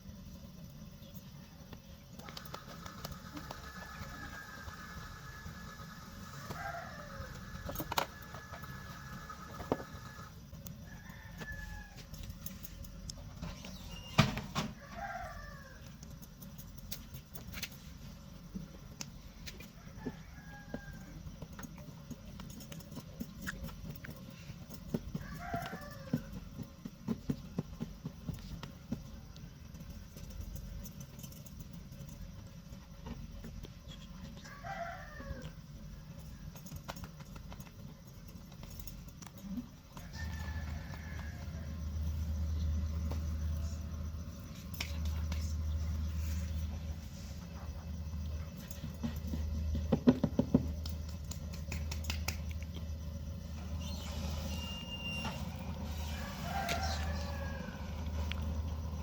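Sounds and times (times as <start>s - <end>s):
rooster crowing: 3.3s - 12.3s, 14.6s - 16.0s, 19.6s - 21.5s, 25.0s - 26.7s, 34.4s - 36.5s, 39.9s - 44.3s, 53.8s - 59.0s.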